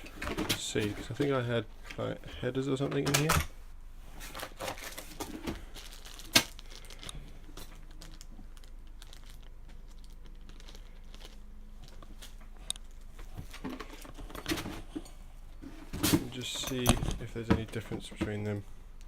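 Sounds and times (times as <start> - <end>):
rummaging through plastic packaging: 4.1 - 18.6.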